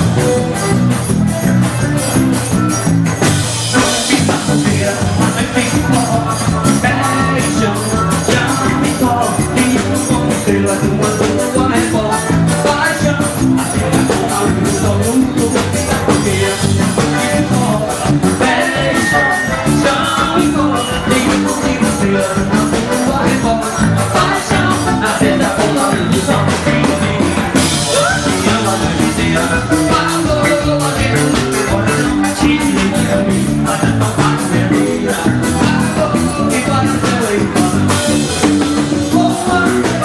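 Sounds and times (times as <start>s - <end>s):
band music with quick beat: 0.0s - 40.0s.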